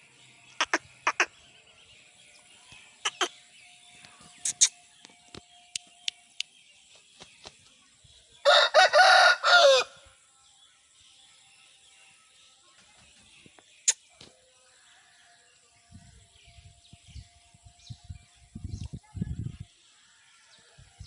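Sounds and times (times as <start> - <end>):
short sharp chirps: 3.0 - 3.3, 4.4 - 4.8
rooster crowing: 8.4 - 10.0.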